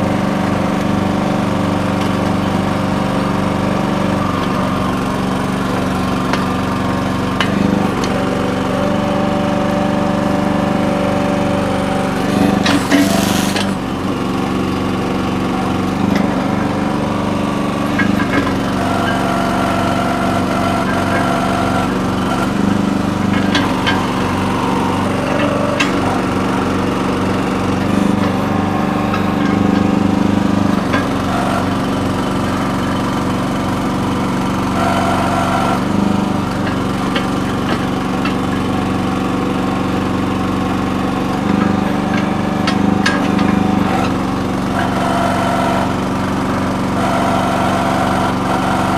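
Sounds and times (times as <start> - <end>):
mini backhoe engine running: 0.0 - 48.9
sharp clicks and knocks: 17.9 - 19.2, 25.2 - 26.3, 27.7 - 31.7, 35.8 - 38.6.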